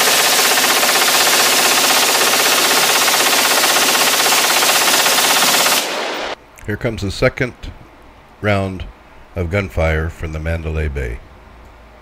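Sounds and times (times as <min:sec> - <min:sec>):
rifle rapid fire: 0:00.0 - 0:06.4.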